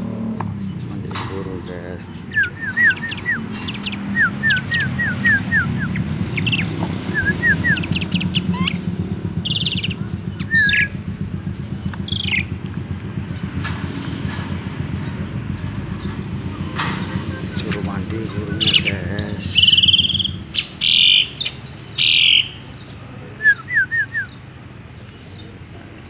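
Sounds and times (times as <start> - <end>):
steady low hum: 0.0 - 20.6
starling chirping: 0.6 - 24.5.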